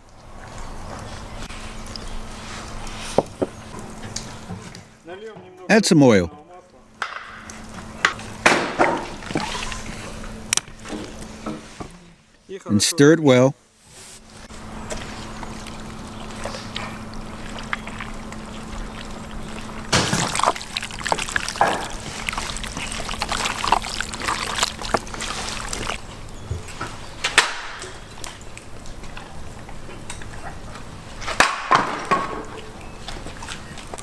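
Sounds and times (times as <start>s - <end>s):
wet squelches of meat being stirred: 7.4s - 11.9s, 14.2s - 31.3s, 32.4s - 34.0s.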